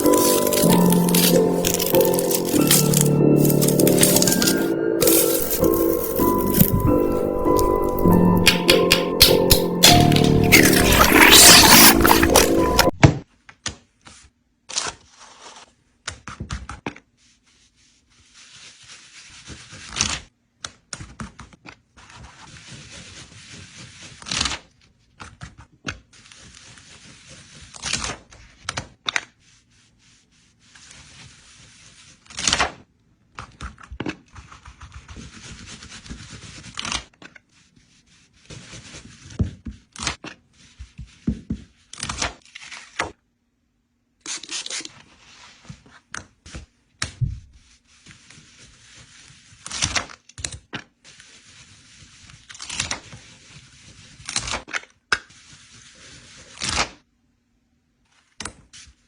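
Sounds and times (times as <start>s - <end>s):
material scraping or tearing: 0.0s - 12.9s
clicks and taps: 7.4s - 10.5s.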